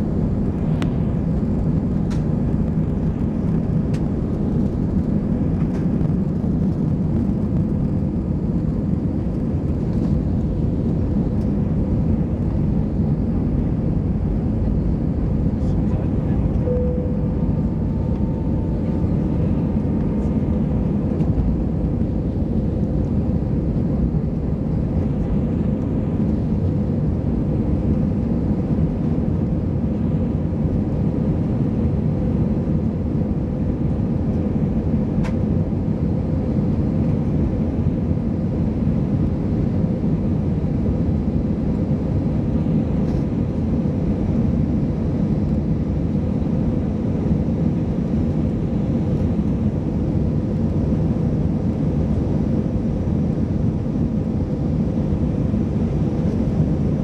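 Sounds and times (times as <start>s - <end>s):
faint steady hum: 0.0s - 57.0s
jet engines rumbling: 0.0s - 57.0s.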